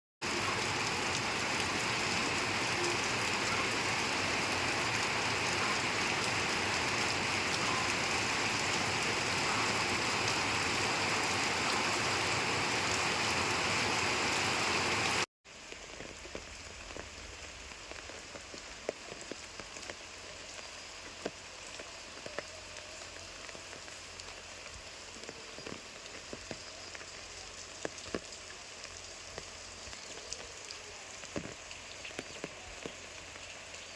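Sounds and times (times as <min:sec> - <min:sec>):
heavy rain downpour: 0:00.2 - 0:33.9
raindrops tapping: 0:15.6 - 0:33.7.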